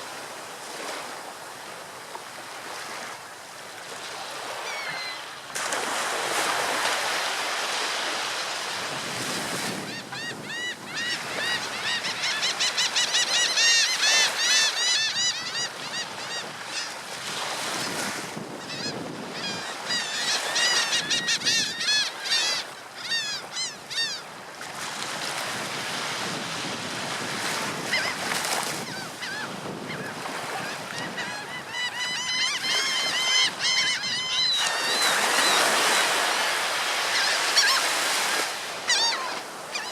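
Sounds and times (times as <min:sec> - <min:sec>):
surf washing onto beach: 0:00.0 - 0:12.1, 0:24.5 - 0:31.6
gulls calling: 0:28.8 - 0:39.9.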